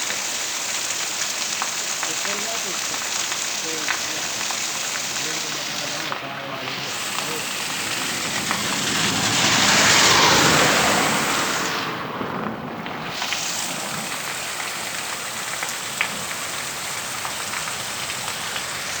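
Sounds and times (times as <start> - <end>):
heavy rain falling: 0.0 - 19.0
drips ticking: 0.9 - 10.6.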